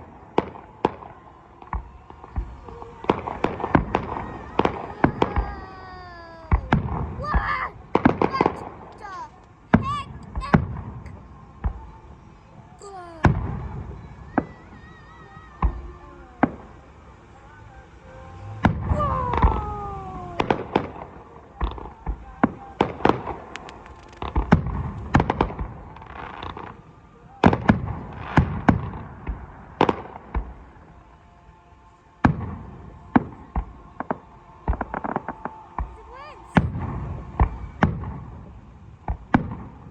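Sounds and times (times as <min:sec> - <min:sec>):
fireworks booming and cracking: 0:00.0 - 0:12.0, 0:12.6 - 0:17.4, 0:18.1 - 0:30.8, 0:32.2 - 0:39.9.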